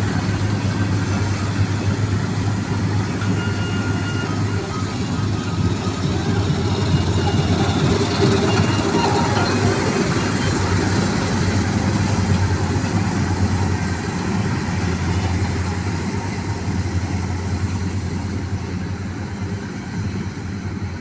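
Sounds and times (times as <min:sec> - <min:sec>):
combine harvester engine drone: 0:00.0 - 0:21.0.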